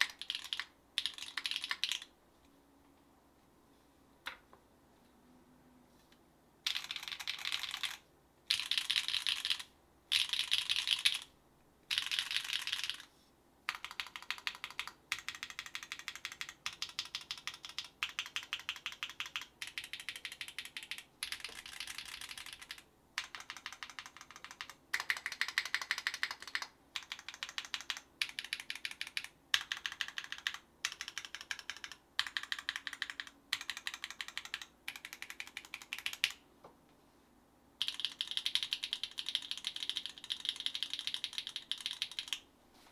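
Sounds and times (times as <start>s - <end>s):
mechanical keyboard typing: 0.0s - 2.1s, 6.6s - 11.3s, 11.9s - 13.1s, 13.7s - 36.4s, 37.8s - 42.4s.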